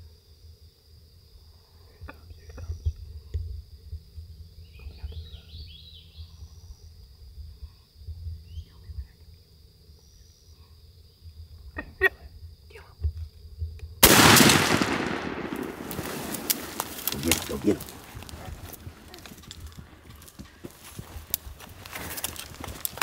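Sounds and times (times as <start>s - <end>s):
high-pitched insect trill: 0.0s - 14.6s
bird chirping: 4.6s - 6.8s
faint clicks: 14.5s - 23.0s.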